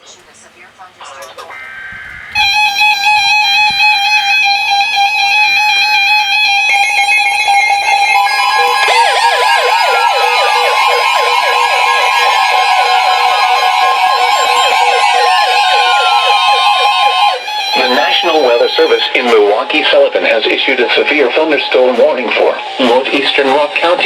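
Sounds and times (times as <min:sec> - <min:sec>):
fast warbling alarm: 0:01.1 - 0:24.0
steady electronic tones: 0:01.1 - 0:24.0
steady high tone: 0:01.2 - 0:24.0.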